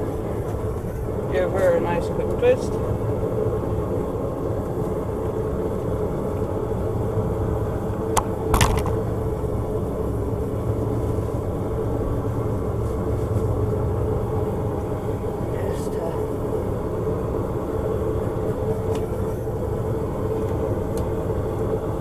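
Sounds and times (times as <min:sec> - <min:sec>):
forge drone: 0:00.0 - 0:22.0
sharp clicks: 0:08.6 - 0:09.0.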